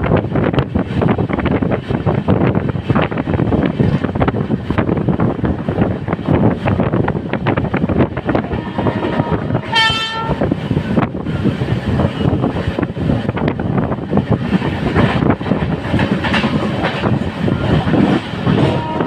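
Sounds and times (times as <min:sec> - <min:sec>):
train coach rumble: 0:00.0 - 0:19.0
locomotive horn blast: 0:08.5 - 0:10.5, 0:18.5 - 0:19.0
wheels clattering over rails: 0:14.1 - 0:18.9.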